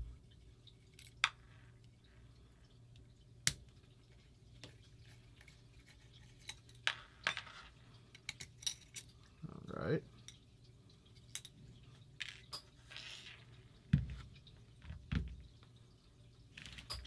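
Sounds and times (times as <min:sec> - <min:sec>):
low steady hum: 0:00.0 - 0:17.0
metal parts and tools clicking: 0:06.2 - 0:09.2.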